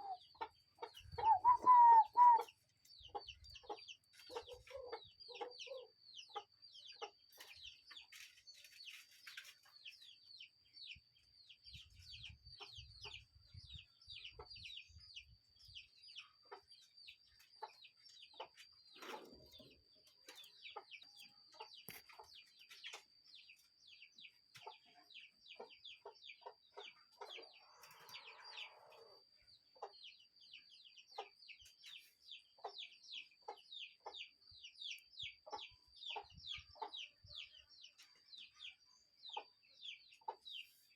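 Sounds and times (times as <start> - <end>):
lower longer bird calls: 0.0 - 0.3, 1.1 - 2.6
birds chirping: 0.0 - 40.9.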